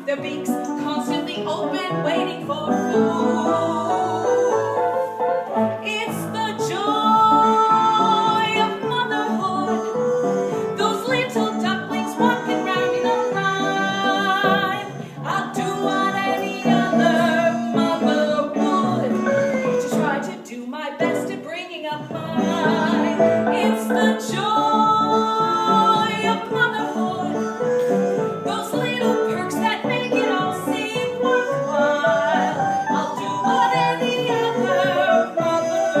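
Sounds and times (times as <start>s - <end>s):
instrumental accompaniment: 0.0s - 36.0s
person singing with vibrato: 0.0s - 36.0s.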